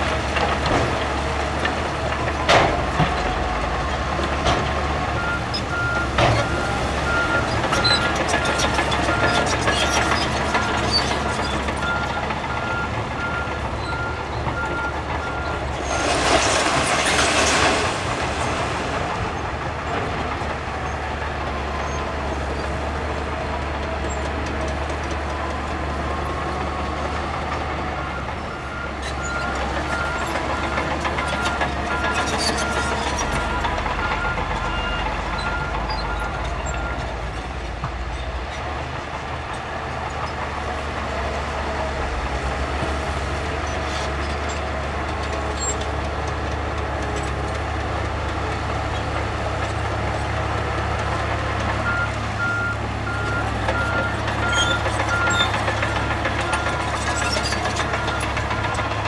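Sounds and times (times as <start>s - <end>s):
heavy machinery running: 0.0s - 59.0s
reversing alarm beeping: 28.0s - 37.1s.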